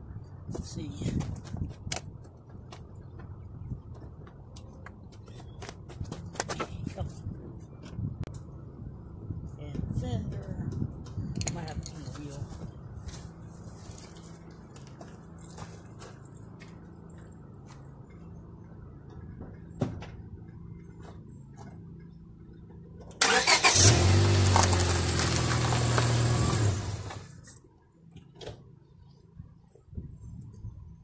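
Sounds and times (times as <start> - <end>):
car engine starting and running: 22.0 - 27.4.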